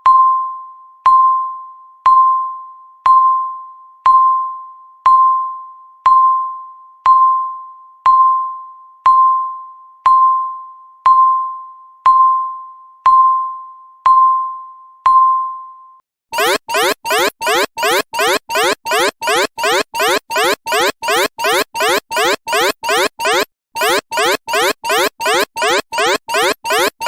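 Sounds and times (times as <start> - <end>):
electronic timer dings: 16.4 - 27.0.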